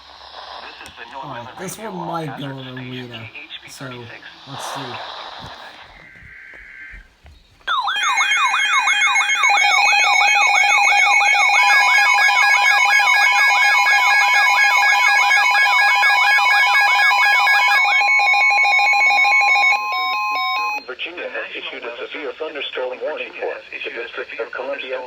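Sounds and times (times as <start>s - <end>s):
warbling alarm sweep: 7.7s - 12.4s.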